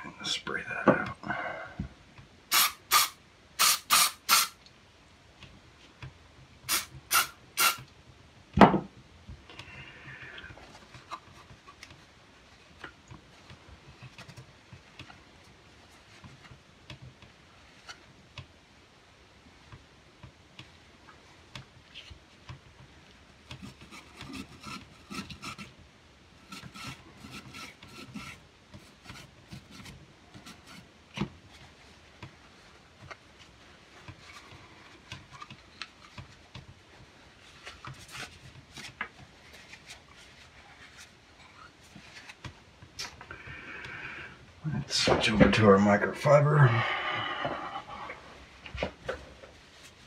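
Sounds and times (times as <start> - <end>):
brush scrubbing metal: 26.4 - 30.8.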